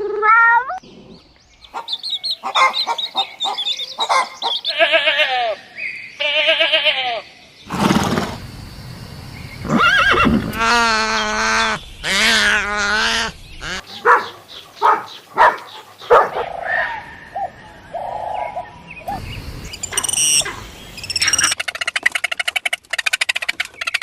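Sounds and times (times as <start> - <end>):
goat bleats: 4.7 - 5.6, 6.2 - 7.2.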